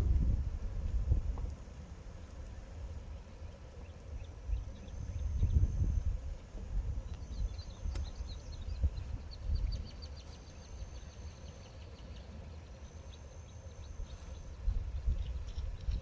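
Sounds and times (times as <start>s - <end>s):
wind rumbling on microphone: 0.0s - 10.3s, 13.9s - 16.0s
birds chirping: 2.1s - 16.0s
thin high whine: 2.1s - 16.0s.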